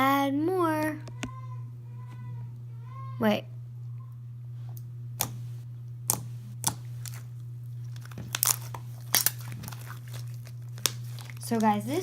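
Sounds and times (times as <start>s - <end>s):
steady low hum: 0.0s - 12.0s
slime squeezed and stretched: 7.9s - 11.4s.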